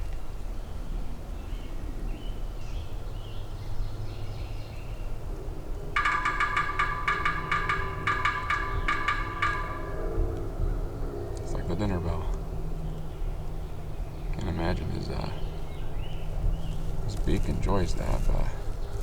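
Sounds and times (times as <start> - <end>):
woodpecker drumming on metal ladder: 5.9 - 12.3.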